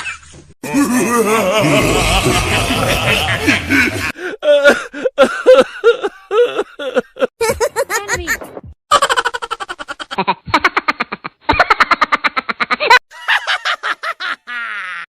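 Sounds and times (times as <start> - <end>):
cartoon laughter effect: 0.0 - 4.2.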